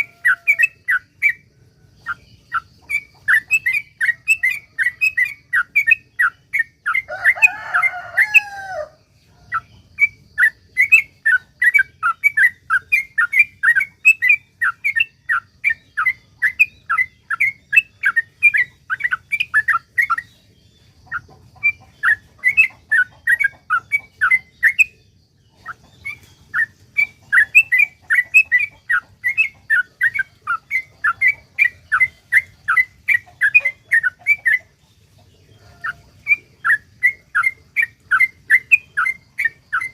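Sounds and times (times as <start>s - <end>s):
lower warbling bird call: 0.0s - 1.4s
bird chirping song: 0.0s - 39.9s.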